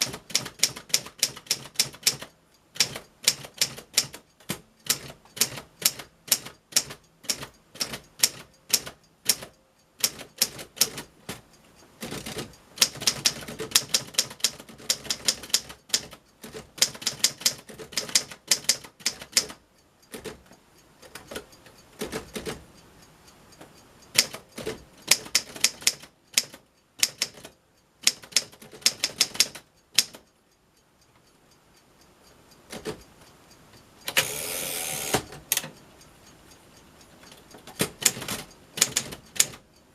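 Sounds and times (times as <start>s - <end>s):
manual typewriter typing: 0.0s - 11.4s, 12.0s - 21.4s, 22.0s - 22.6s, 24.2s - 30.2s, 37.6s - 39.6s.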